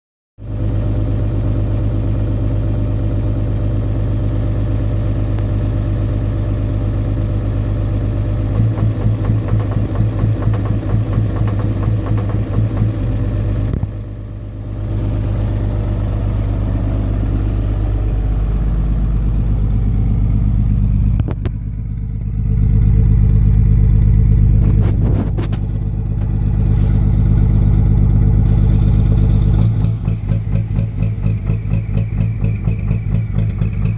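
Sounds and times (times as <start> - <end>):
diesel engine idling: 0.4 - 33.9
engine injector knock: 8.3 - 14.2, 28.7 - 33.9.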